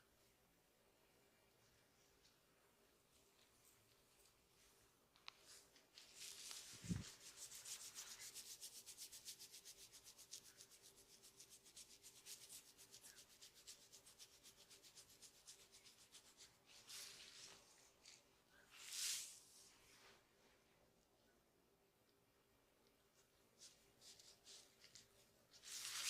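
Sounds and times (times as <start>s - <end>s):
hands rubbing hair and scalp: 5.4s - 18.2s, 18.8s - 20.2s, 23.6s - 26.0s.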